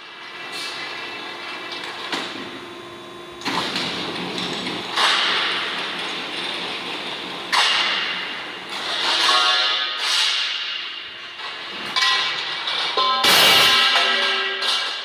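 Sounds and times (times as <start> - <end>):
machine hum: 0.3 - 8.8.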